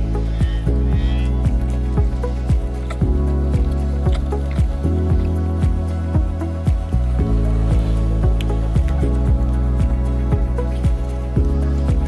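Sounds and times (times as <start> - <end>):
background music with steady beat: 0.0 - 12.0
deep kick drum: 0.0 - 12.0.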